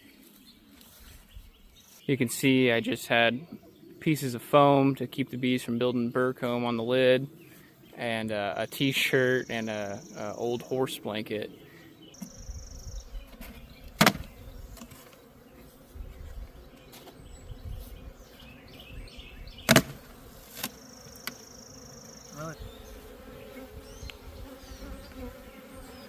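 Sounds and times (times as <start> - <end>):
honeybees buzzing: 0.1 - 26.0
sharp knocks: 19.7 - 20.0.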